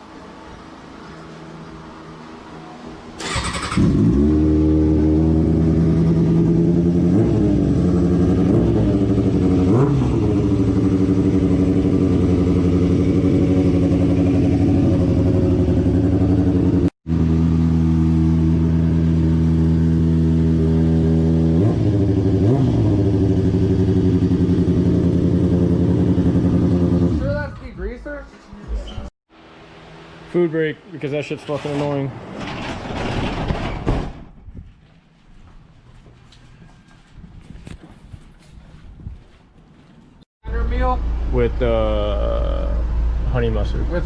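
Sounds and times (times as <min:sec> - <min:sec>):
motorcycle starter cranking: 0:03.2 - 0:04.2
motorcycle engine idling: 0:07.7 - 0:20.9.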